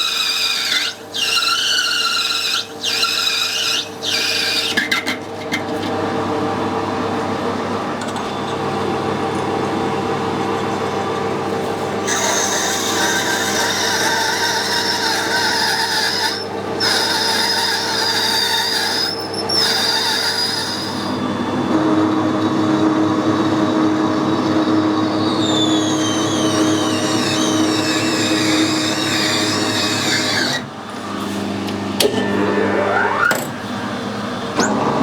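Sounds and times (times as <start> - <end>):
lathe tool squealing on metal: 0.0 - 5.7, 12.0 - 21.3, 24.2 - 31.4, 32.2 - 33.6
machine hum: 21.1 - 35.0.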